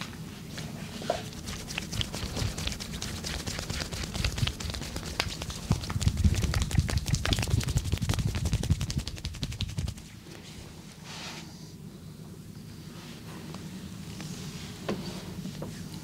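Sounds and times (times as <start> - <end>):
hands tapping and slapping body: 1.4 - 10.0.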